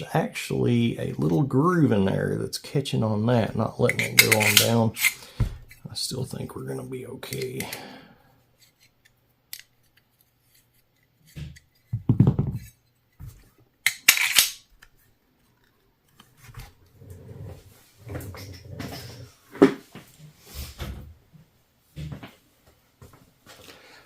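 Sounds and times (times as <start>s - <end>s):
metal parts clinking and scraping: 3.9s - 5.8s, 13.8s - 14.6s.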